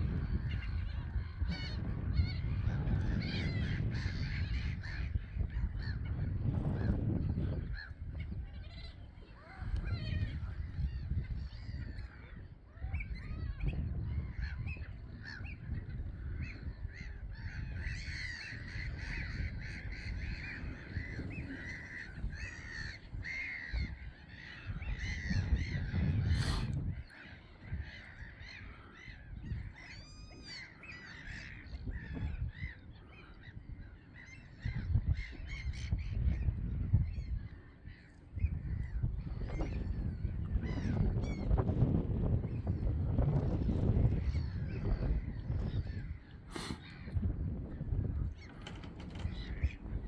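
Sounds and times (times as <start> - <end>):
gulls calling: 7.2 - 36.0, 43.7 - 50.0.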